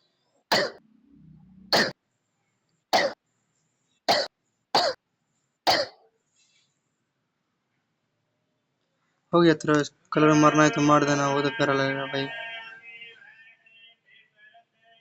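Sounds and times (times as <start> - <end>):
person coughing: 0.5 - 0.8, 1.7 - 2.0, 3.0 - 3.2, 4.1 - 5.0, 5.7 - 6.0.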